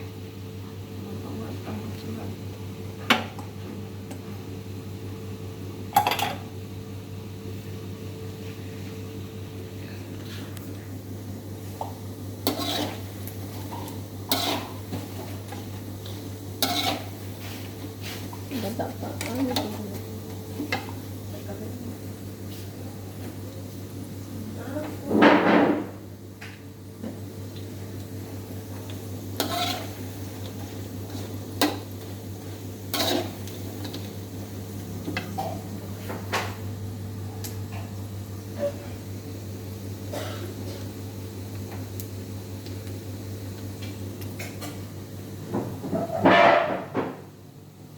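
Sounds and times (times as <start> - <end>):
steady low hum: 0.0 - 46.2
metal utensil scraping a pan: 12.5 - 13.0, 14.3 - 14.8, 16.6 - 17.1, 29.4 - 29.9, 32.9 - 33.4.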